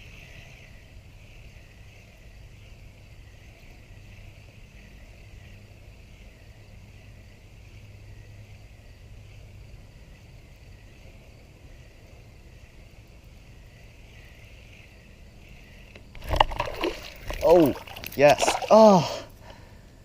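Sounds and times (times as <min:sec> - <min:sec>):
high insect drone: 0:00.0 - 0:20.0.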